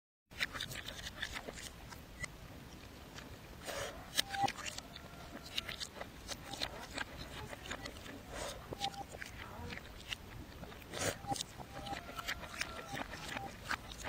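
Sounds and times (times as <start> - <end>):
reversed eating sounds: 0.3 - 14.0
short squeaky snippets: 4.2 - 5.5.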